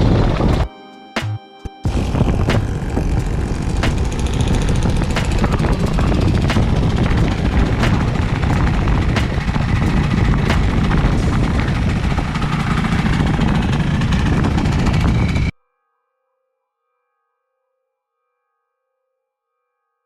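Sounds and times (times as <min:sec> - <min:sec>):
scooter engine running: 0:01.9 - 0:15.5.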